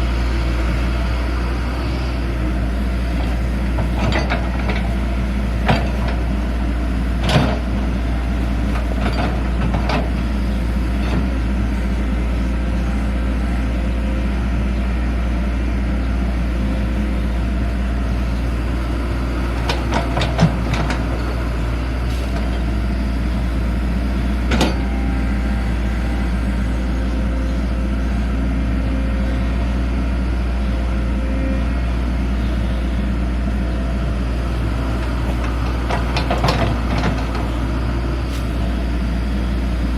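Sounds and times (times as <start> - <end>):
excavator diesel engine running: 0.0 - 39.9
machine knocks and clanks: 35.4 - 37.5.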